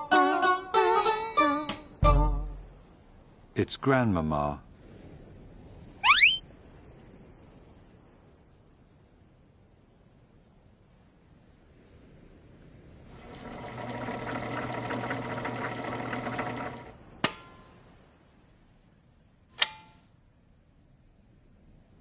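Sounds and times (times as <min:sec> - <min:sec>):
buzzing mechanical rattle: 0:13.1 - 0:17.0
sharp clicks with short ring: 0:19.6 - 0:20.1.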